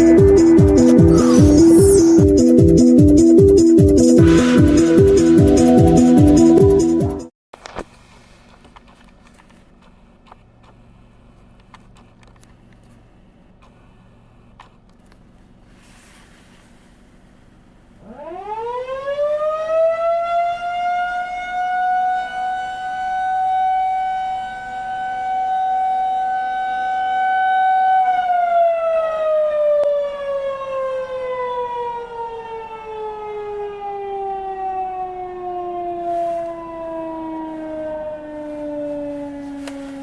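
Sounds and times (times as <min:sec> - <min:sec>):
outdoor warning siren: 0:00.8 - 0:02.3, 0:18.0 - 0:40.0.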